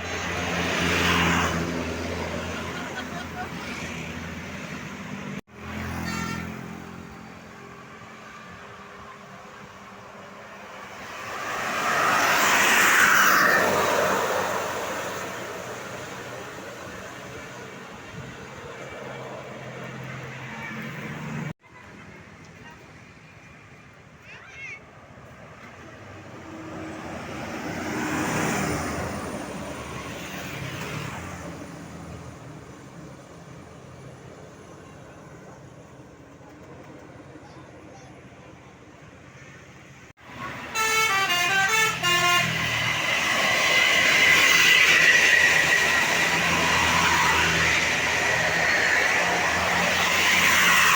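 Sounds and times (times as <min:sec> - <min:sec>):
vehicle passing by: 0:00.0 - 0:06.0, 0:10.7 - 0:17.1
road vehicle driving past: 0:09.8 - 0:17.5, 0:42.0 - 0:50.9.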